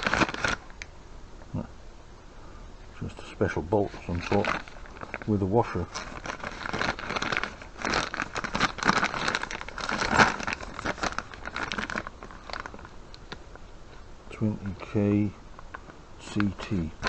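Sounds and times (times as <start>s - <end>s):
plastic bag crinkling: 0.0s - 0.9s, 3.8s - 13.6s.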